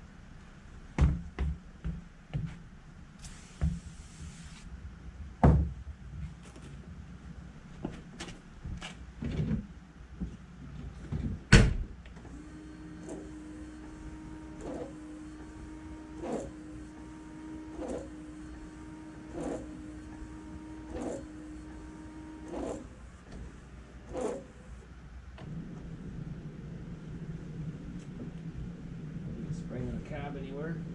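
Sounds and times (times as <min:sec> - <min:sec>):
wiper motor humming: 0:12.3 - 0:24.6.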